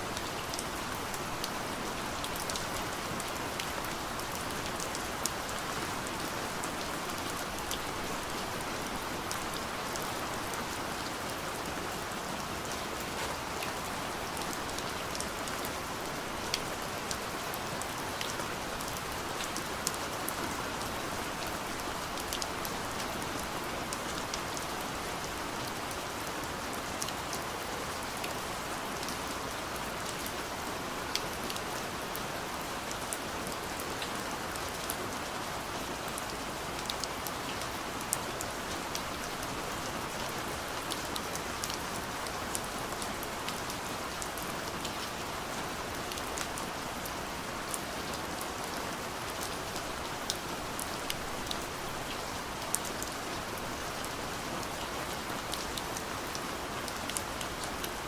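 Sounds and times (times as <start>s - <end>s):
rain on a window: 0.0s - 58.0s
light taps of raindrops: 12.6s - 15.6s.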